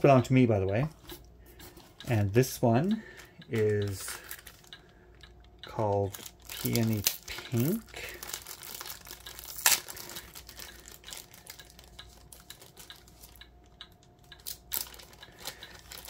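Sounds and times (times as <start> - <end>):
plastic bags crinkling: 3.6 - 4.8, 5.9 - 13.4, 14.4 - 16.0
sharp plastic crackle: 3.6 - 4.8, 5.6 - 16.0.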